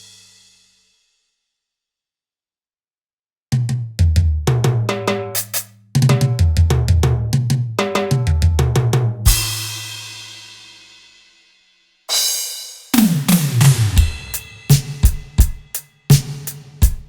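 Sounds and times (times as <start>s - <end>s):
drum fills of kick snare and toms: 3.5s - 10.4s, 12.1s - 17.0s
crash cymbal ringing: 13.5s - 16.2s.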